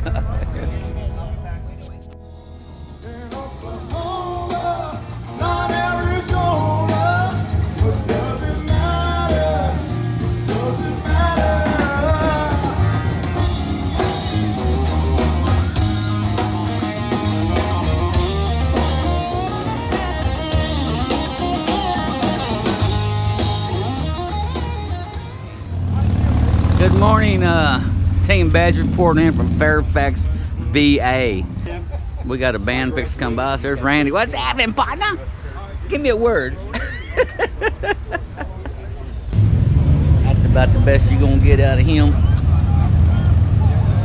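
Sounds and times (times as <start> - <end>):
rock song with vocals: 2.6 - 25.5.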